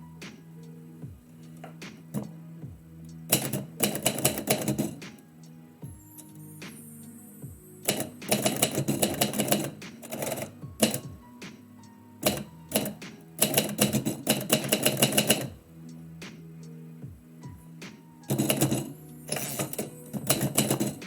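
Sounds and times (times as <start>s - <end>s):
typewriter key strikes: 3.3s - 5.1s, 7.8s - 11.2s, 12.2s - 15.6s, 18.3s - 21.0s.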